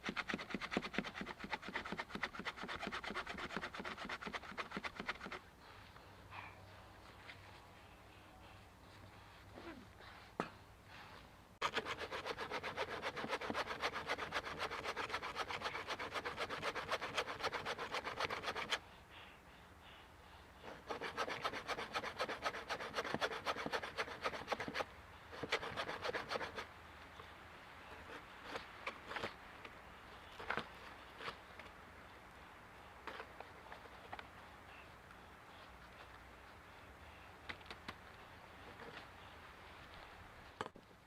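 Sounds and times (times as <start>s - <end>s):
hand saw cutting a log: 0.0s - 5.4s, 11.6s - 18.8s, 20.6s - 26.7s, 28.0s - 29.4s.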